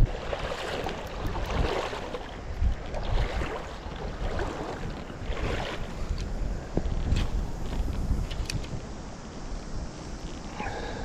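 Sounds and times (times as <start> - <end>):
river water rushing: 0.0 - 6.1
wind buffeting microphone: 0.0 - 11.0.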